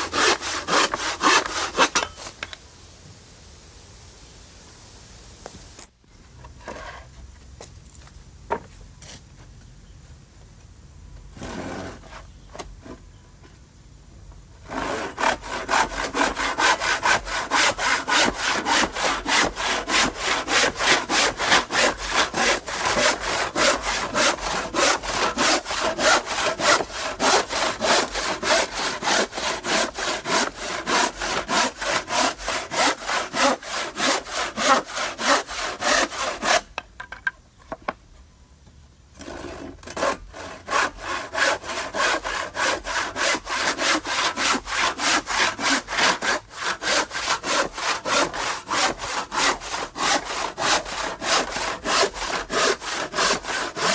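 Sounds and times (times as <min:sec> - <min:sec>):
hand saw cutting wood: 0:00.0 - 0:02.5, 0:11.4 - 0:13.0, 0:14.6 - 0:36.8, 0:39.2 - 0:53.9.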